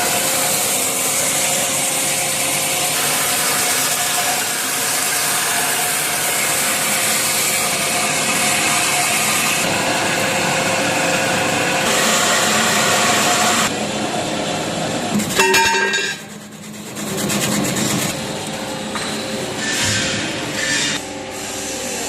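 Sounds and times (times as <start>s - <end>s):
band saw cutting metal: 0.0s - 13.8s.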